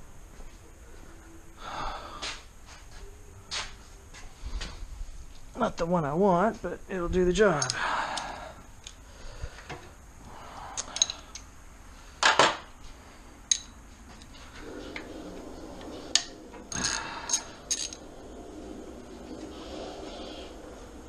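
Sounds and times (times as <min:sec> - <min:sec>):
metal tools clinking: 0:10.8 - 0:11.5, 0:16.7 - 0:18.0.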